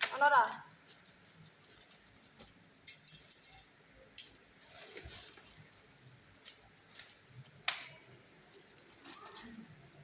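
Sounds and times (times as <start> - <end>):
soft rustle: 0.8 - 2.6, 4.6 - 7.6, 8.2 - 10.0.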